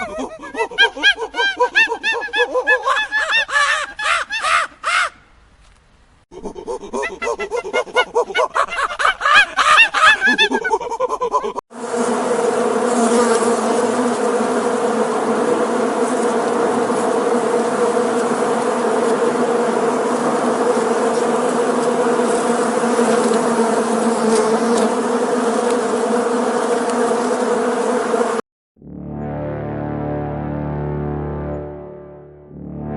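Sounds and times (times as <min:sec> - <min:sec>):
animal making rapid pitched calls: 0:06.4 - 0:10.7
bees buzzing: 0:11.8 - 0:28.4.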